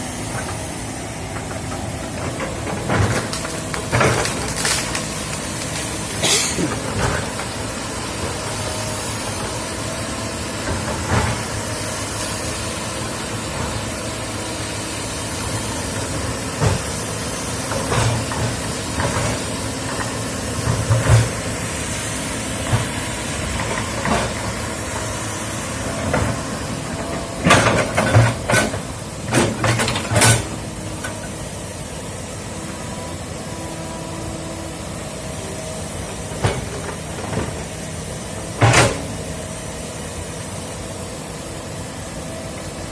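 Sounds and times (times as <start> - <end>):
excavator diesel engine running: 0.0 - 42.9.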